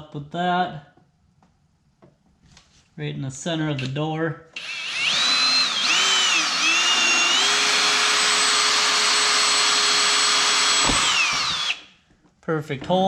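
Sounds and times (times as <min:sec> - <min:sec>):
power drill with hole saw cutting: 0:04.6 - 0:11.9.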